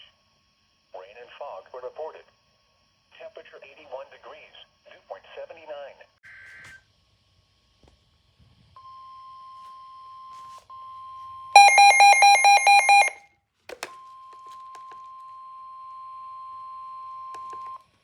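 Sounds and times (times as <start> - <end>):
electronic alarm beeping rapidly: 11.6 - 13.2
steady alert tone: 11.6 - 13.2.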